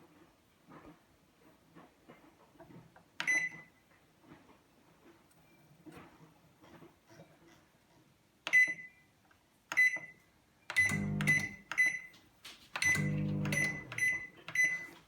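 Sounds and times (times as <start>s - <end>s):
microwave keypad beeps: 3.2s - 3.7s, 8.5s - 9.1s, 9.7s - 12.2s, 12.8s - 15.0s.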